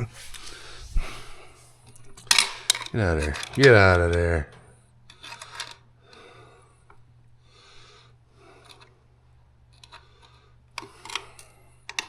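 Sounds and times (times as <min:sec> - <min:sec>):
steady low hum: 0:00.0 - 0:05.2.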